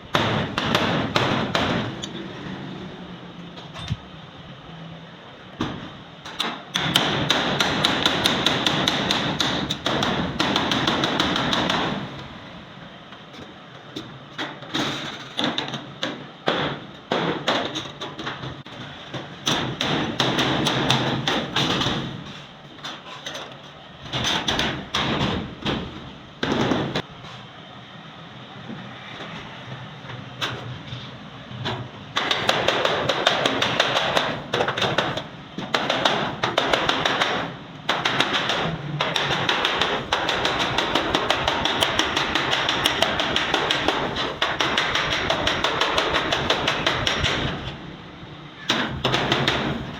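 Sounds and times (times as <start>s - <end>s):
hammer blows on sheet steel: 0.1s - 2.1s, 5.6s - 12.3s, 31.6s - 47.8s, 48.6s - 49.9s.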